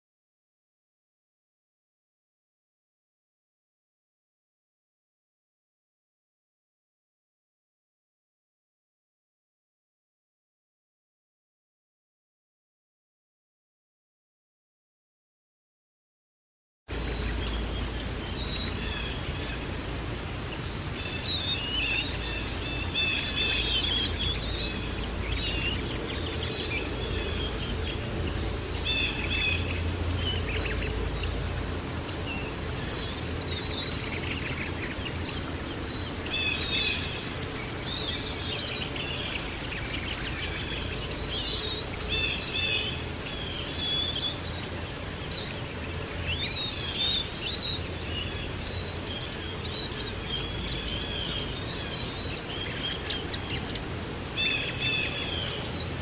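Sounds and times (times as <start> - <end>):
low background rush: 16.9 - 56.0
songbirds chirping and trilling: 16.9 - 56.0.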